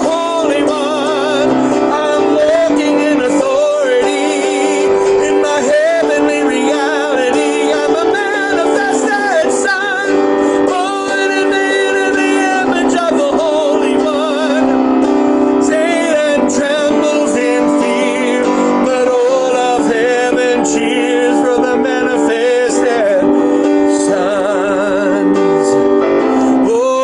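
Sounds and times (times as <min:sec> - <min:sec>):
person singing with vibrato: 0:00.0 - 0:27.0
sustained keyboard chords: 0:00.0 - 0:27.0.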